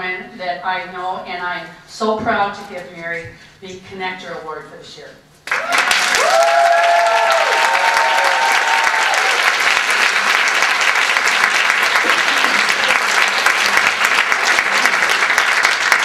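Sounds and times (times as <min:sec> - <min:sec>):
audience applauding: 0:05.4 - 0:16.0.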